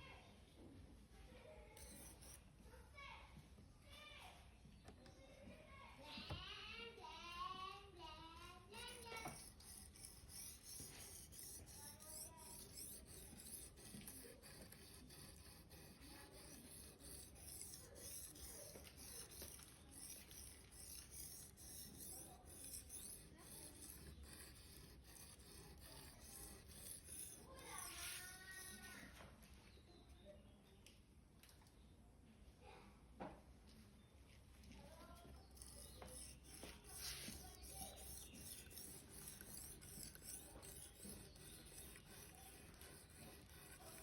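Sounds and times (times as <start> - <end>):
knife blade being sharpened: 1.8 - 2.4, 8.8 - 28.8, 35.6 - 44.0.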